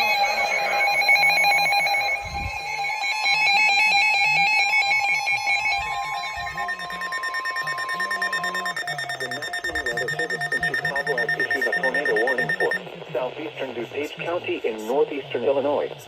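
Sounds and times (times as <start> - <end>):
rapid pulsing beeps: 0.0 - 2.3, 5.8 - 12.8
steady high tone: 0.0 - 2.4, 6.0 - 12.8
electronic alarm tones: 0.0 - 2.8, 5.7 - 12.8
music: 6.6 - 12.8.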